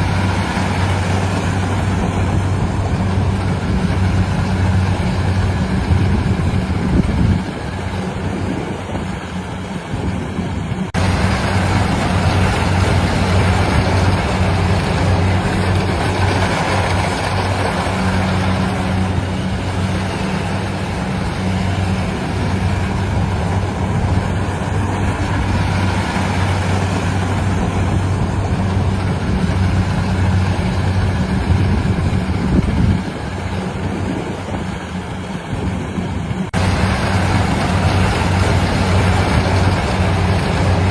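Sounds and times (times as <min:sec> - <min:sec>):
harvesting machine running: 0:00.0 - 0:40.9.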